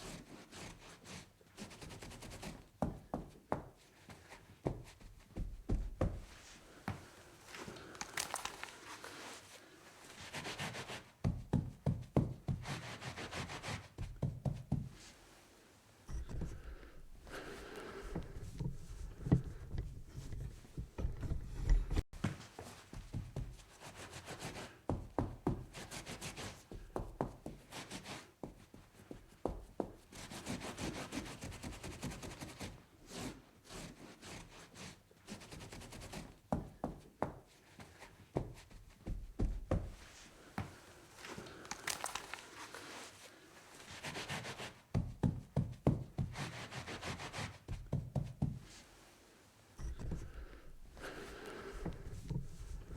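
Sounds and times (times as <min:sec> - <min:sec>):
rubbing strokes on tabletop: 0:12.5 - 0:14.0, 0:46.2 - 0:47.8
light knocks and taps: 0:18.1 - 0:22.4.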